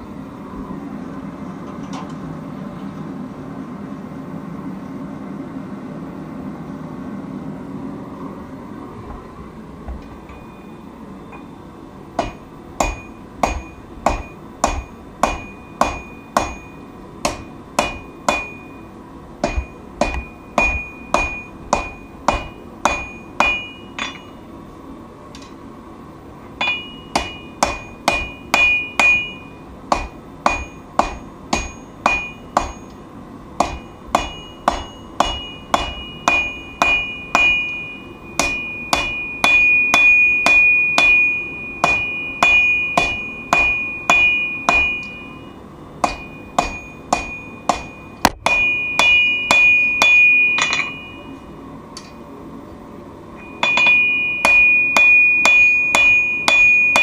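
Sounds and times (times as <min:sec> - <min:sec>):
hammer striking steel on anvil: 0:12.2 - 0:24.4, 0:26.6 - 0:33.0, 0:33.6 - 0:51.4, 0:53.4 - 0:57.0.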